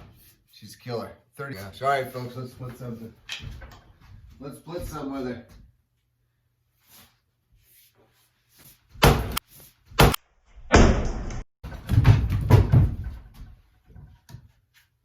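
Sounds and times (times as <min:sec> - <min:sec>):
axe striking wood: 0:09.0 - 0:09.4, 0:10.0 - 0:11.4.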